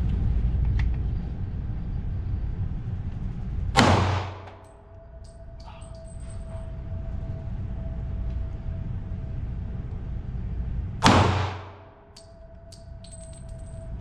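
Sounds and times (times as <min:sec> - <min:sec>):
steady low rumble: 0:00.0 - 0:14.0
pistol shot: 0:03.8 - 0:04.6, 0:11.0 - 0:11.8.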